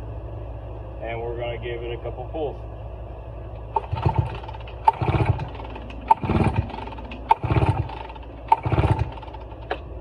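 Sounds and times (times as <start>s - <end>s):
engine cranking without firing: 3.7s - 9.9s
recoil starter pull click: 3.8s - 9.8s.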